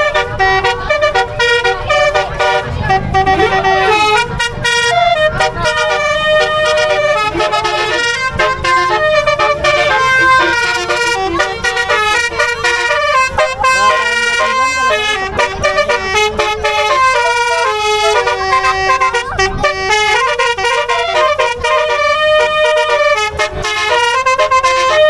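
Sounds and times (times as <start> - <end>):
bus horns playing multi-note tunes: 0.0 - 25.0
low engine rumble: 0.0 - 25.0.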